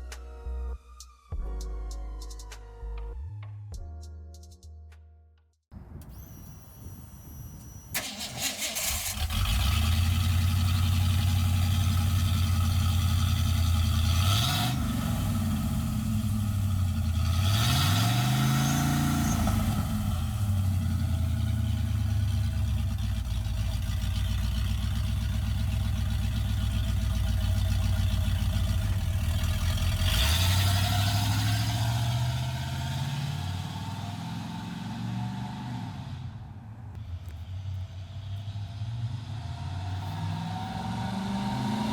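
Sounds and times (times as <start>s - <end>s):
engine revving with deep exhaust: 8.8s - 36.4s, 37.2s - 41.9s.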